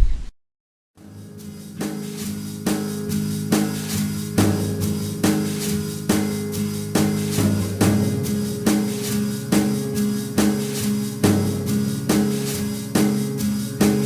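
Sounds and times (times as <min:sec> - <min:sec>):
instrumental music with drum beat: 0:01.0 - 0:14.0.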